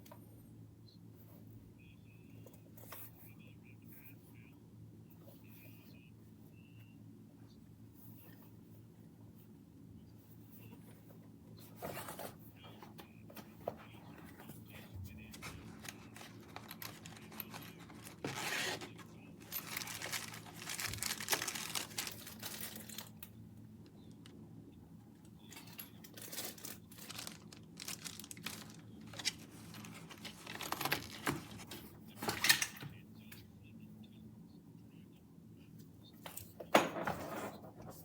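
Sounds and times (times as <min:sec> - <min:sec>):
packaging rustling and tearing: 0:15.3 - 0:23.3, 0:26.1 - 0:31.6.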